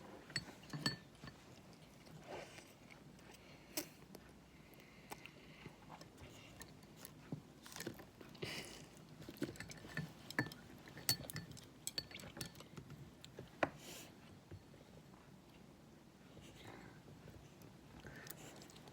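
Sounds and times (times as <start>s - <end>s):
utensils clinking against dishes: 0.4s - 1.4s, 9.4s - 12.6s.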